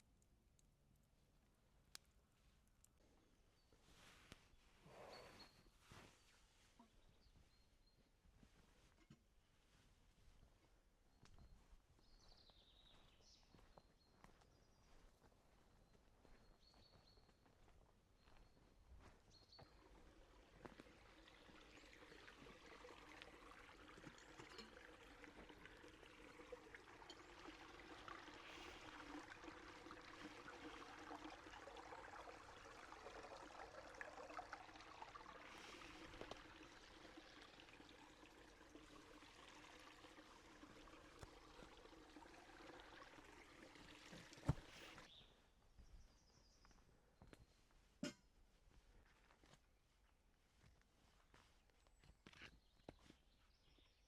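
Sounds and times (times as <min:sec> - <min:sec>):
rushing trickling water: 0:19.4 - 0:45.2.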